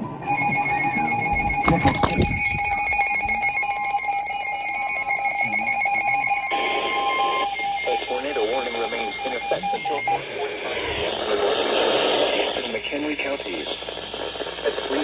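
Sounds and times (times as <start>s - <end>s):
electronic alarm tone: 0.0s - 10.2s.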